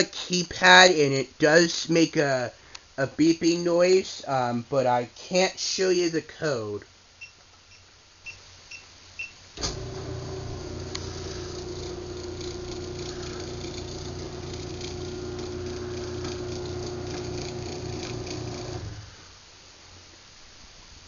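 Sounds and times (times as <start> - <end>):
garage door motor humming: 9.6 - 19.3.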